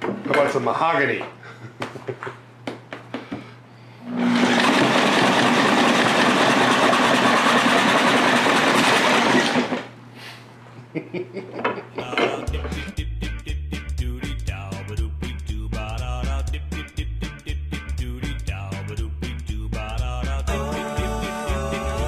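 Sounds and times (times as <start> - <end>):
saw cutting wood: 4.0 - 9.9.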